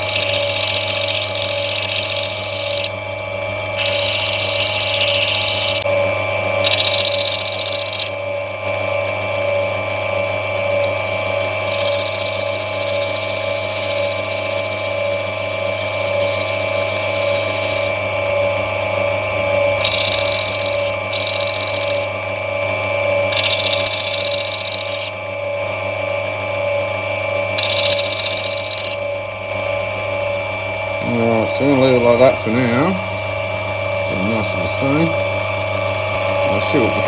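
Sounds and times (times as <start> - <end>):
stone grinding on spinning wheel: 0.0 - 2.9, 3.8 - 5.8, 6.6 - 8.2, 10.8 - 17.9, 19.8 - 22.1, 23.3 - 25.2, 27.6 - 29.0
grinding machine motor running: 0.0 - 37.0.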